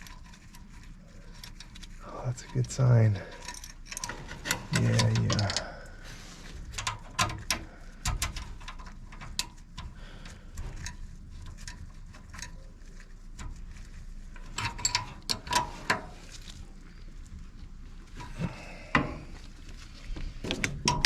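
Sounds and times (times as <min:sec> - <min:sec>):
hand tools clicking and tapping: 0:06.8 - 0:11.7.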